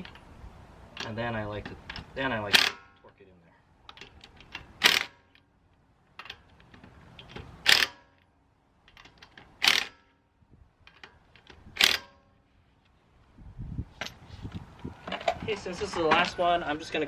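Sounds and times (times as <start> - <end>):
ratchet wrench clicking: 7.2 - 8.1.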